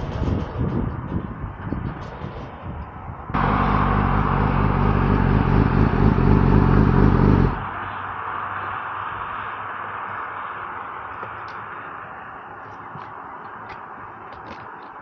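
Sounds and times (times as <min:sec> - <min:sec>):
steady rush of noise: 0:00.0 - 0:15.0
motorcycle engine running loud: 0:03.4 - 0:07.8.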